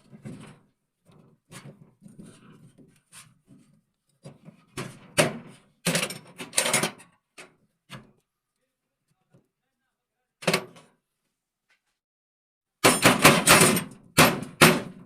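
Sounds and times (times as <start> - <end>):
tools knocking and scraping on parts: 0.0 - 8.1, 12.9 - 15.0.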